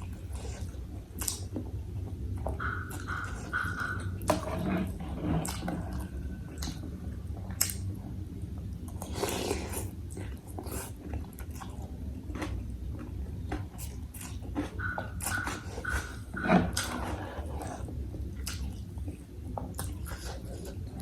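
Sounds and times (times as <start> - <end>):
chewing: 0.0 - 21.0
slurping: 9.0 - 9.9, 13.8 - 18.8.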